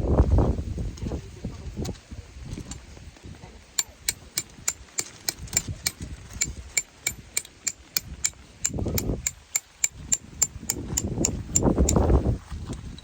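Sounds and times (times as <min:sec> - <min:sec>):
wind rumbling on microphone: 0:00.0 - 0:13.0
hammer tapping metal: 0:03.8 - 0:12.0.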